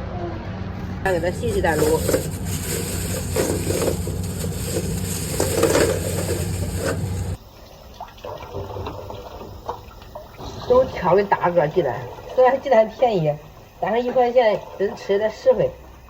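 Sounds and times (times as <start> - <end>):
tap water running and splashing: 1.1 - 10.6.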